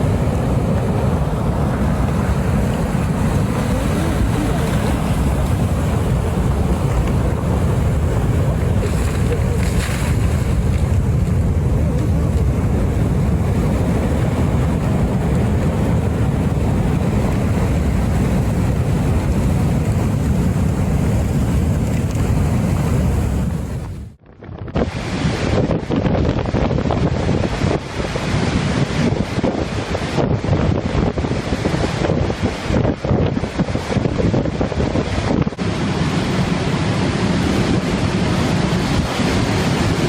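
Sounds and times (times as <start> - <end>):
rush of surf: 0.0 - 24.2, 24.8 - 40.0
wind buffeting microphone: 0.0 - 40.0.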